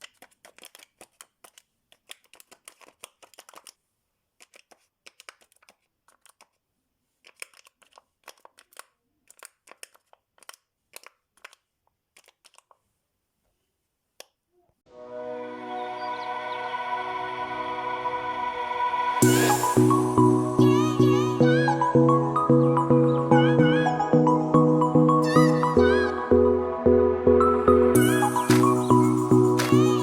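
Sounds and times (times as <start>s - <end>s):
paper toy clicking and crinkling: 0.0s - 3.8s, 4.4s - 12.8s.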